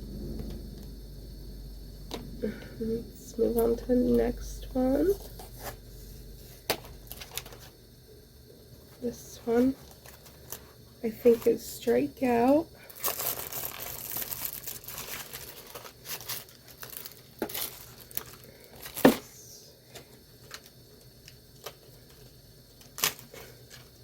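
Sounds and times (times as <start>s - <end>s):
packaging being torn and crinkled: 12.9s - 19.3s, 22.8s - 23.9s.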